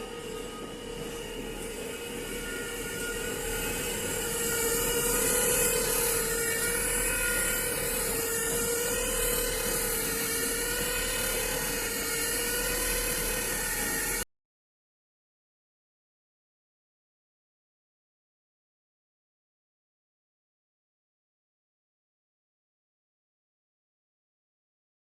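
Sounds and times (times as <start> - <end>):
machine whine: 0.0 - 14.3.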